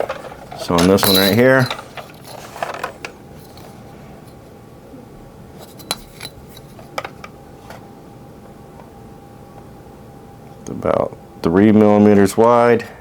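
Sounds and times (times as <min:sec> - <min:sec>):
small tools and plastic parts clinking: 0:00.0 - 0:03.7.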